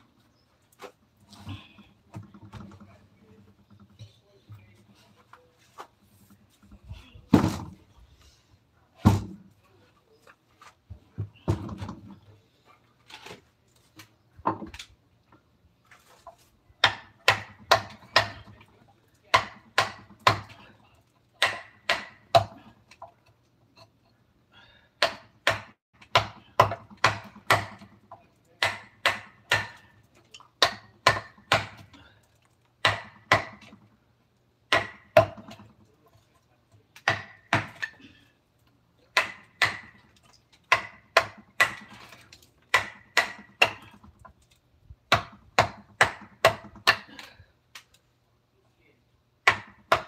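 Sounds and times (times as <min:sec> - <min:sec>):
mallet striking chisel into wood: 0:19.3 - 0:20.5, 0:21.4 - 0:22.6, 0:28.6 - 0:29.8, 0:32.8 - 0:33.8, 0:34.7 - 0:35.6, 0:39.2 - 0:40.0, 0:40.7 - 0:41.9, 0:42.7 - 0:43.8, 0:45.1 - 0:47.1, 0:49.4 - 0:50.0.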